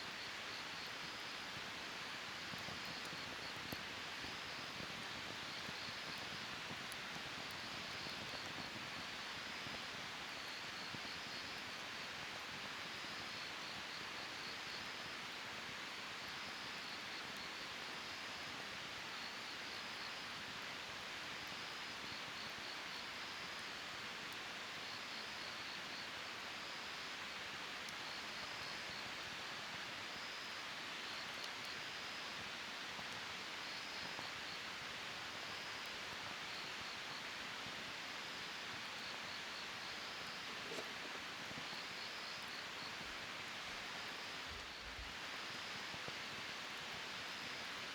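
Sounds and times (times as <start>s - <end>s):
wood fire hissing and popping: 0.3s - 13.8s, 31.4s - 47.9s.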